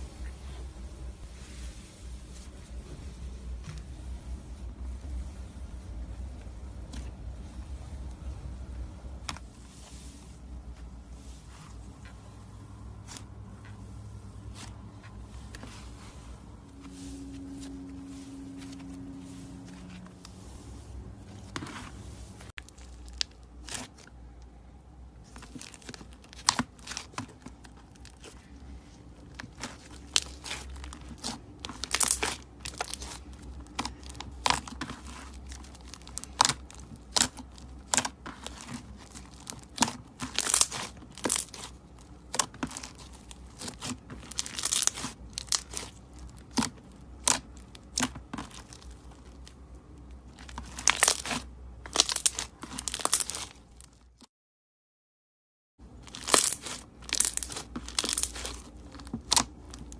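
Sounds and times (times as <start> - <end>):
slime crackling and popping: 25.2 - 28.4, 29.3 - 49.6, 50.2 - 54.0, 56.0 - 59.9.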